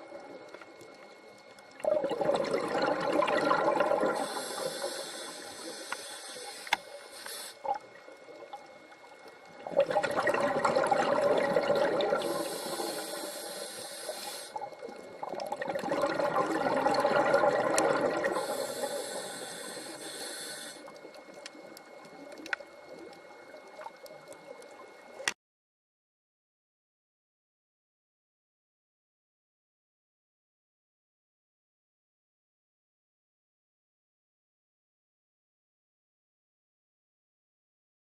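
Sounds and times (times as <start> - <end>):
underwater bubbling water: 0.0 - 25.3
high hiss: 4.1 - 7.7, 12.2 - 14.6, 18.3 - 20.9.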